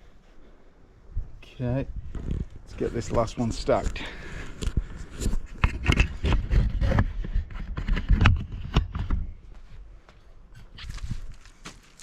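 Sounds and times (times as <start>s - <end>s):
wood knocking and scraping: 5.2s - 9.3s.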